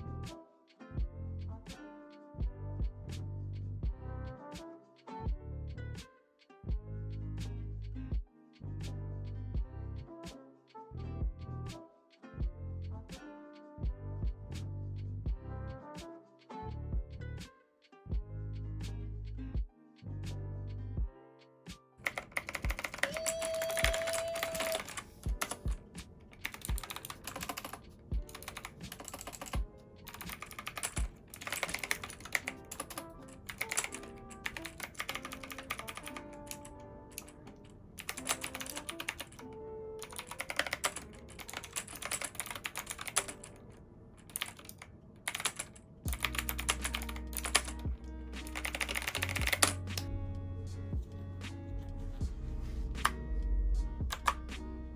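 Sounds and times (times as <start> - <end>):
lofi background music: 0.0 - 43.8, 45.3 - 54.9
mechanical keyboard key clicks: 22.0 - 39.4, 40.0 - 43.6, 44.2 - 47.8, 48.4 - 50.1, 54.1 - 54.5.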